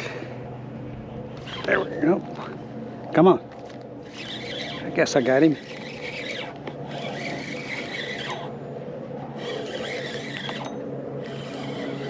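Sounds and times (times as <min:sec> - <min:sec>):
steady low hum: 0:00.0 - 0:12.0
fishing reel gears whirring: 0:01.3 - 0:02.6, 0:03.7 - 0:12.0.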